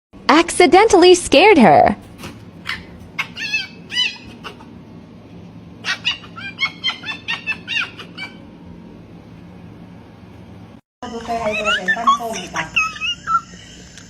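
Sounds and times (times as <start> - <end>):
fox chirping: 2.7 - 4.6.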